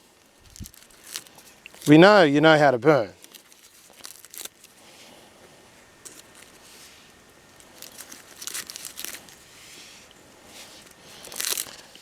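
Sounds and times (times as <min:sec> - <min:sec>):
dry bark crumpled and torn: 0:00.0 - 0:02.0, 0:03.2 - 0:05.1, 0:06.0 - 0:09.8, 0:10.5 - 0:12.0.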